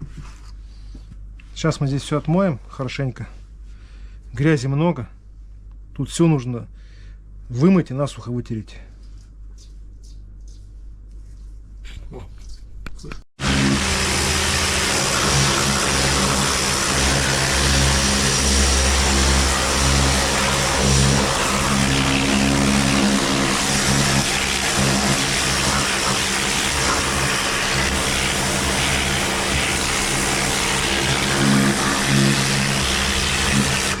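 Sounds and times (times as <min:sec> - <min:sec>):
electric machine motor hum: 0:13.4 - 0:34.0
loud hiss: 0:13.4 - 0:34.0.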